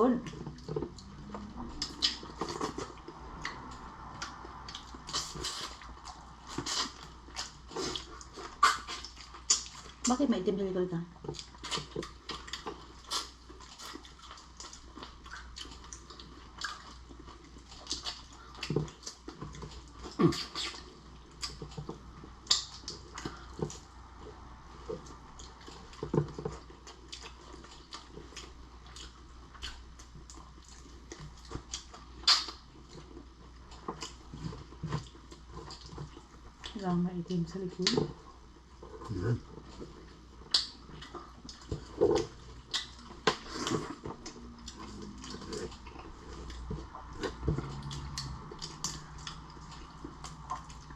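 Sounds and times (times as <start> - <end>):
wet chewing: 0.1 - 10.4, 11.1 - 50.9
lip smacks: 1.8 - 10.0, 20.1 - 21.6, 31.7 - 32.6, 40.4 - 50.9.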